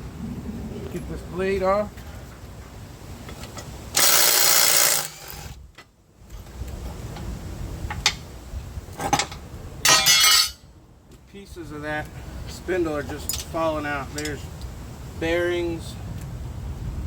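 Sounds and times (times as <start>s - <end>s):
impact wrench hammering: 4.0s - 5.3s.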